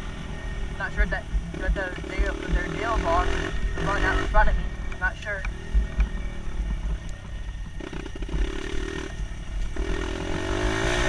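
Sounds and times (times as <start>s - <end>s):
dirt bike engine running: 0.0s - 11.0s.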